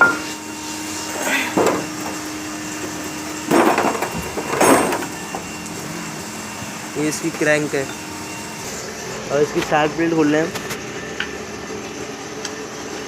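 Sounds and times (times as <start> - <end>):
metal tools clattering and knocking: 3.5 - 5.1.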